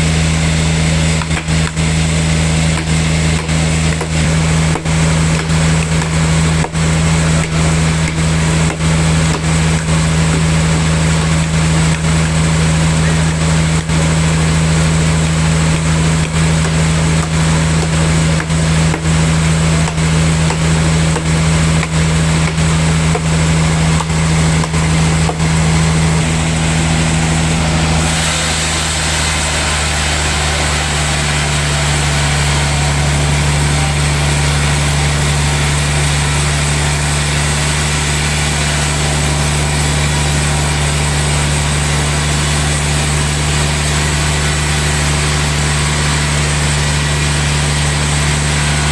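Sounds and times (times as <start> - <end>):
sawmill machinery drone: 0.0 - 48.9.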